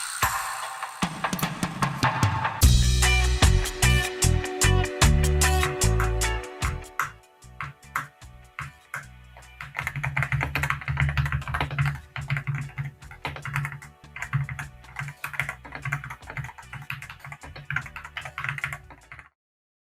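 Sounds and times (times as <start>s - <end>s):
quiet background music: 2.8s - 19.3s
mechanical keyboard typing: 7.0s - 19.3s.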